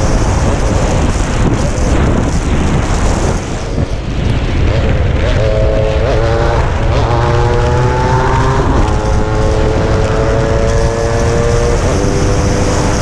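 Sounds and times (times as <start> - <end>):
two-stroke engine revving high: 4.6 - 13.0.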